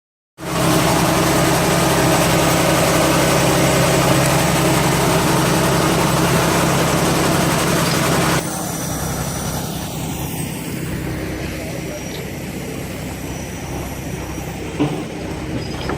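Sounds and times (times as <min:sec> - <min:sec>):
engine humming: 0:00.4 - 0:15.9.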